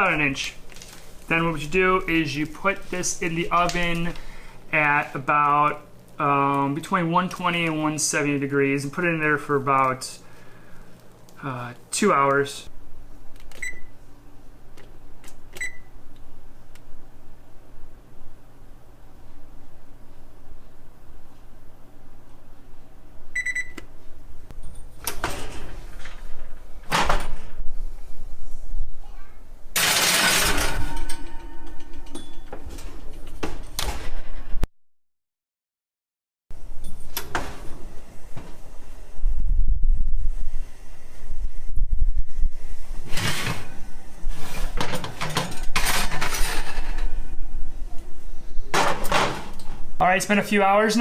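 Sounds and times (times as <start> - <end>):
low steady hum: 0.0 - 34.6, 36.5 - 51.0
sliding scraping noises: 42.9 - 47.4.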